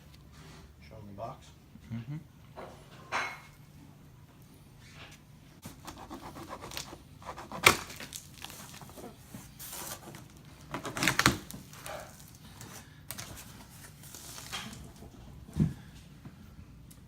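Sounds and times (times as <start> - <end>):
cardboard box scraping and rustling: 7.4 - 10.3.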